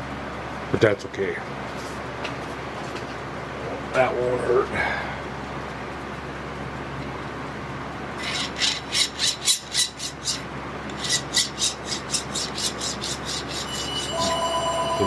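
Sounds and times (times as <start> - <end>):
hand file rasping on metal: 8.2 - 13.7.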